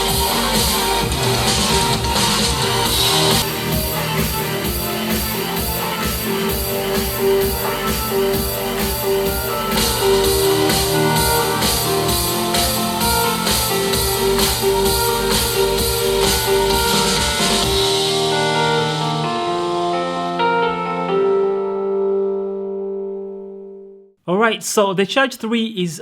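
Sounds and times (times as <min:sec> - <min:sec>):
rock music from a speaker: 0:00.0 - 0:19.3.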